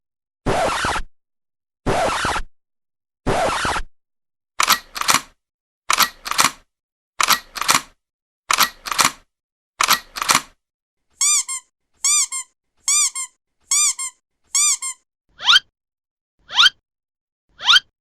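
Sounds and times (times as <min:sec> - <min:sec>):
camera shutter clicking: 0:04.6 - 0:05.3, 0:05.9 - 0:06.6, 0:07.2 - 0:07.9, 0:08.5 - 0:09.2, 0:09.8 - 0:10.5
squeaky toy squeaking: 0:11.2 - 0:15.7, 0:17.6 - 0:17.9.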